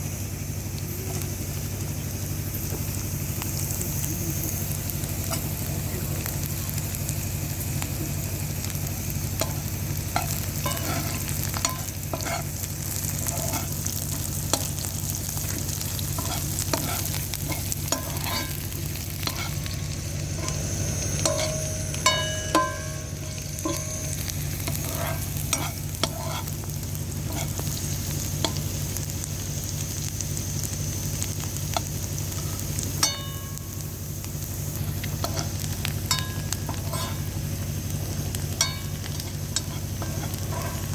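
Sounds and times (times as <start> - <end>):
food frying in a pan: 0.0 - 40.9
utensil stirring: 9.4 - 28.7, 38.6 - 40.9
utensil striking metal pan: 10.2 - 12.5, 20.4 - 26.4, 33.0 - 33.8, 36.1 - 37.2, 38.5 - 40.9.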